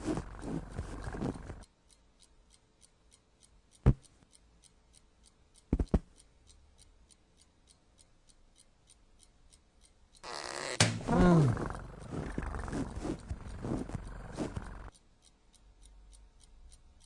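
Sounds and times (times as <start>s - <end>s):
clock ticking: 0.0s - 17.0s
loud sharp click: 10.7s - 11.1s.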